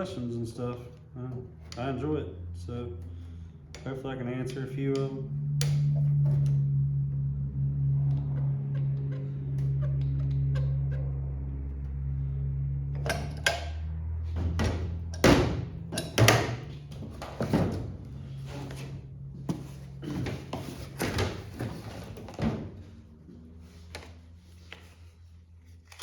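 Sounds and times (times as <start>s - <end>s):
steady low hum: 0.0s - 26.0s
metal parts clanking: 13.0s - 13.8s, 14.4s - 17.9s.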